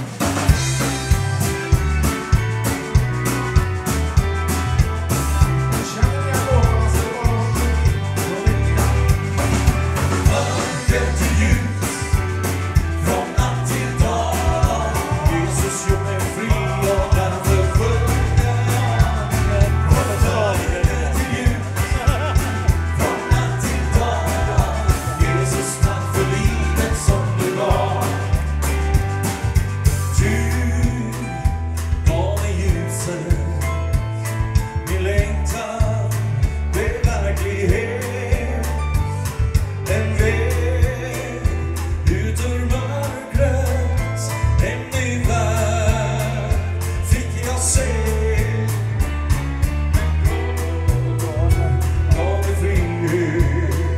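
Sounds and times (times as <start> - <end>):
bass: 0.0 - 53.9
full band playing: 0.0 - 53.9
steady drum beat: 0.0 - 53.9
lead vocalist singing: 5.6 - 49.3, 49.9 - 53.9.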